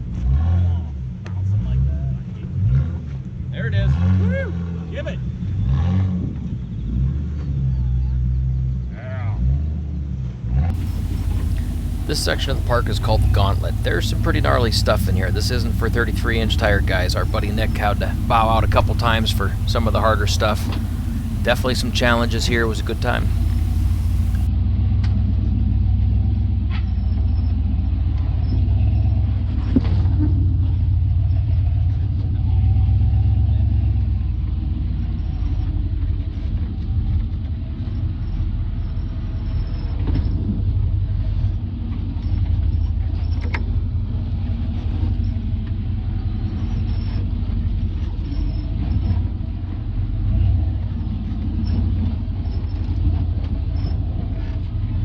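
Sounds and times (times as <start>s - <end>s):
engine low rumble: 10.7s - 24.5s.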